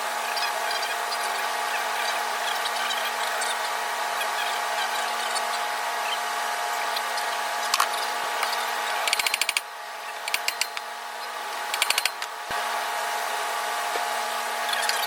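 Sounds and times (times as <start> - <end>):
steady background hum: 0.0 - 15.0
ratchet wrench clicking: 9.0 - 9.6, 10.2 - 10.8, 11.7 - 12.3.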